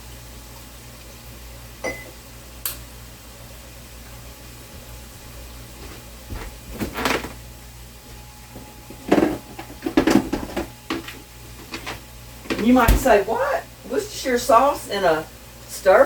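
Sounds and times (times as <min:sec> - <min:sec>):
kitchen clatters and knocks: 0:05.8 - 0:07.4, 0:08.9 - 0:13.3.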